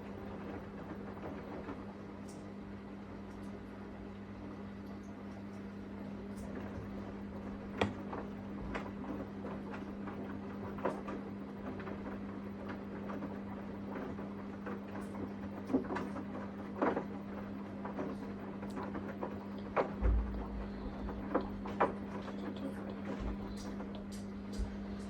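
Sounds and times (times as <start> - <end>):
washing machine running: 0.0 - 25.0.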